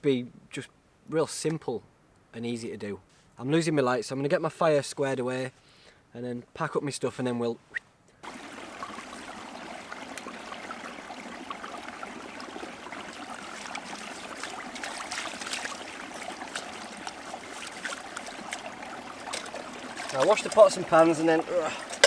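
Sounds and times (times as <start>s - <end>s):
stream trickling: 8.2s - 22.0s.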